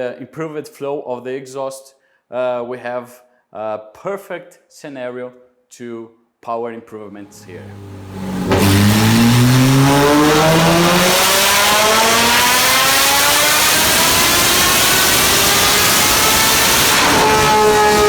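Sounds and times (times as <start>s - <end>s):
sports car engine at full throttle: 7.3s - 18.0s.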